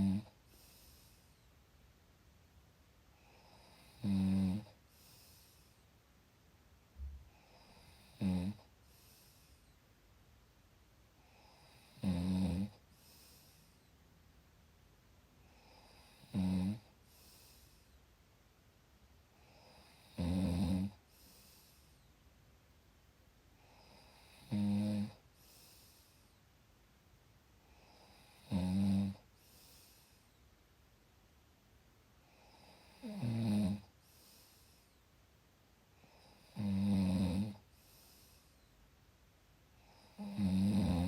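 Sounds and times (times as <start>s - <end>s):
person snoring: 0.0s - 1.2s, 3.2s - 5.7s, 7.3s - 9.4s, 11.3s - 13.6s, 15.5s - 17.8s, 19.4s - 21.7s, 23.6s - 26.0s, 27.7s - 30.0s, 32.3s - 33.9s, 36.0s - 37.7s, 39.8s - 41.0s.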